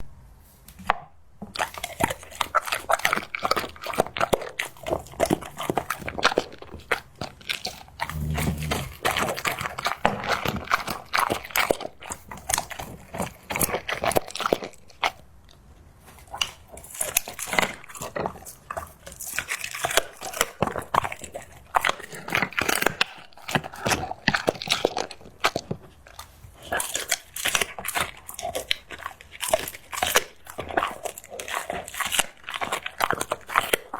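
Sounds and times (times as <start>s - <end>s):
dog gnawing a bone: 1.5s - 33.9s
low thump: 8.1s - 9.0s.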